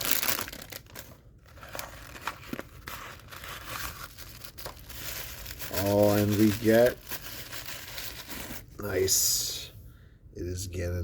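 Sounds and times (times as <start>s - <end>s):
wrapper tearing and crinkling: 0.0s - 8.7s.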